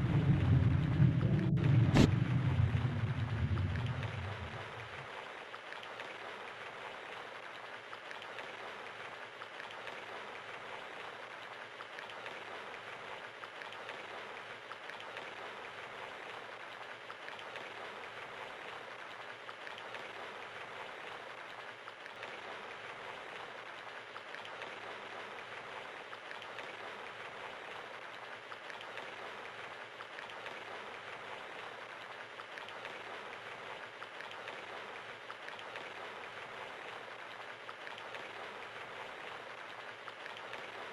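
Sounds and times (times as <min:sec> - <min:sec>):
rain pattering: 0:00.0 - 0:40.9.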